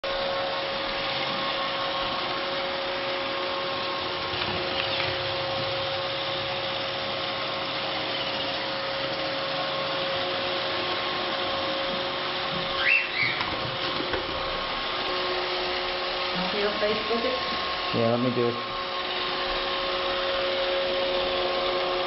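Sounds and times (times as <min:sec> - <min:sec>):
robot vacuum humming: 0:00.1 - 0:22.0.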